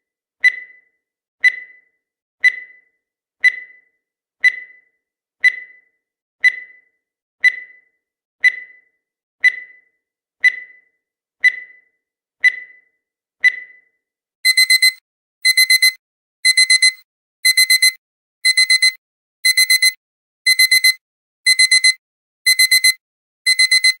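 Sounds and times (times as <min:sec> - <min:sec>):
alarm clock beeping: 0:00.4 - 0:24.0
countdown timer beeps: 0:14.5 - 0:24.0.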